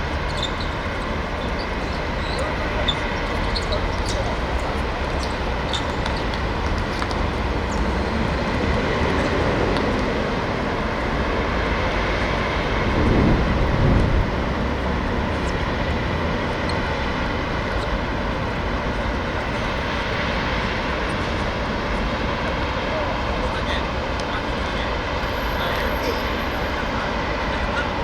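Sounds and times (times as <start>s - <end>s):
rushing rumbling noise: 6.3s - 25.2s.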